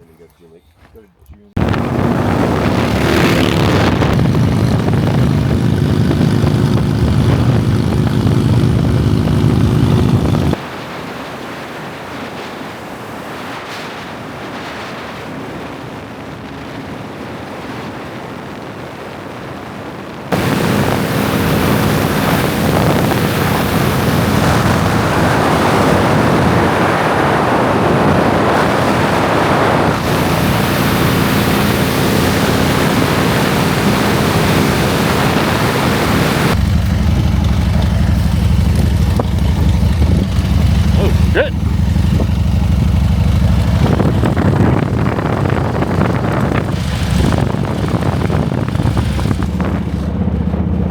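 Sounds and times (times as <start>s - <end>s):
motorcycle engine: 1.6s - 10.6s, 20.3s - 50.9s
wind noise on microphone: 1.6s - 50.9s.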